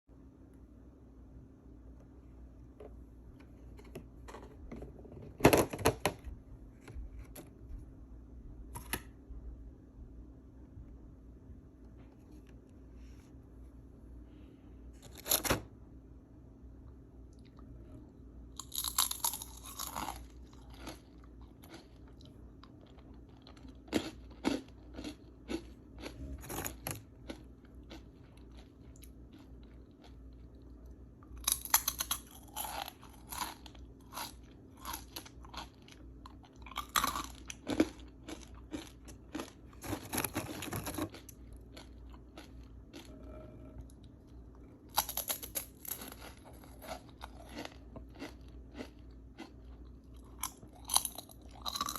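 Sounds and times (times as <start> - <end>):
chewing crunches: 17.3 - 51.9
crisp biting crunches: 36.5 - 43.1.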